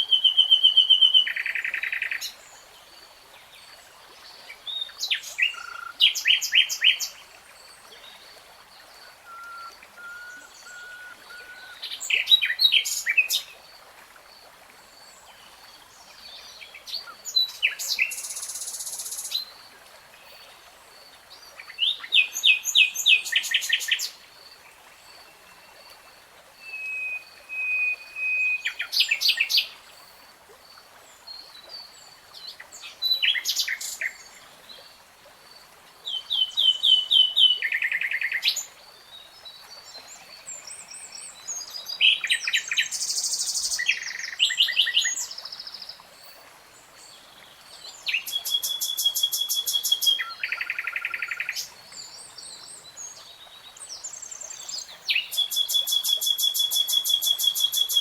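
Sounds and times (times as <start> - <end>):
songbird singing: 4.5 - 7.2, 8.0 - 13.6, 16.3 - 19.5, 26.6 - 30.2, 36.0 - 46.4, 47.0 - 58.0.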